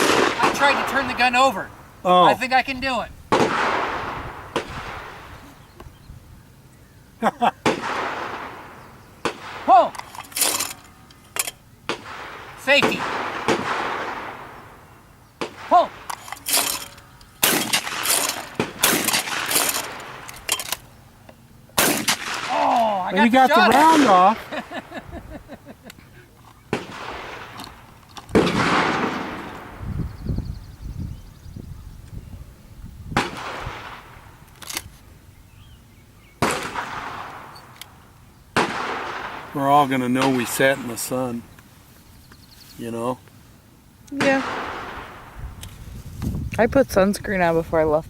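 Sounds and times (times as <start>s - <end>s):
shotgun shots with echo: 0.0s - 1.2s, 3.3s - 5.3s, 7.6s - 9.9s, 11.9s - 14.8s, 15.4s - 16.8s, 17.4s - 20.3s, 21.8s - 22.8s, 26.7s - 29.8s, 33.2s - 34.2s, 36.4s - 37.6s, 38.6s - 41.0s, 44.2s - 45.4s.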